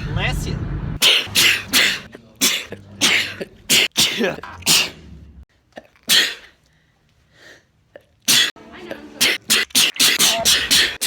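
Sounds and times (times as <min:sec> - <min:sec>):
man sneezing: 0:01.0 - 0:05.0, 0:06.1 - 0:06.6, 0:08.3 - 0:08.5, 0:09.2 - 0:11.0.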